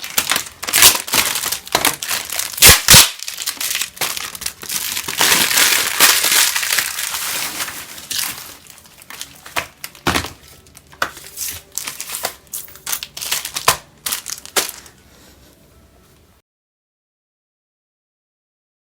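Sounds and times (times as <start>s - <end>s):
plastic wrapper crinkling: 0.0s - 15.0s.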